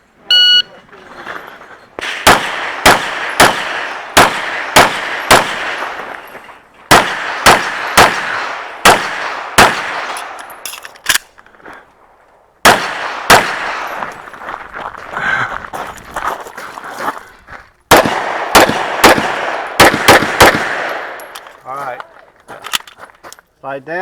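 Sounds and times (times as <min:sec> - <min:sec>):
handgun shots with ringing echo: 0:02.0 - 0:06.3, 0:06.9 - 0:10.6, 0:12.7 - 0:14.1, 0:17.9 - 0:21.5.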